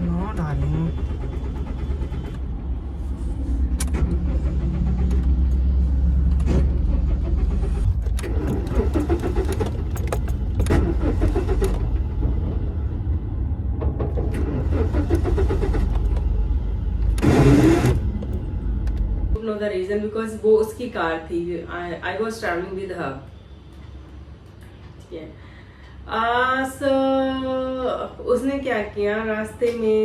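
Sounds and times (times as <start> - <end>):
car starter motor cranking: 0.0 - 19.3
low rumble: 0.0 - 19.4
ignition key clicks and jingling: 7.9 - 11.8.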